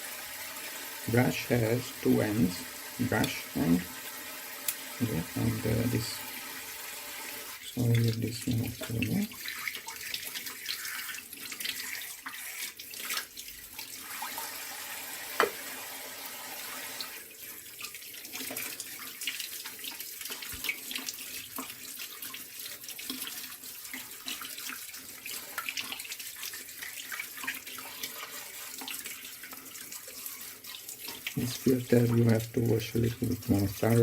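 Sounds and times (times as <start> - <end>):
plastic parts rinsed and handled: 0.0 - 14.6, 16.8 - 34.0
tap running into sink: 15.3 - 15.8.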